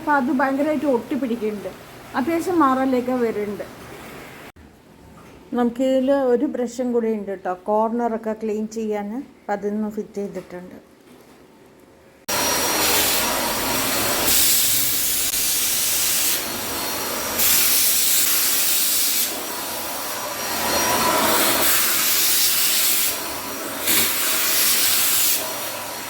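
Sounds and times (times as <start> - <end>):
vacuum cleaner suction: 12.3 - 26.0.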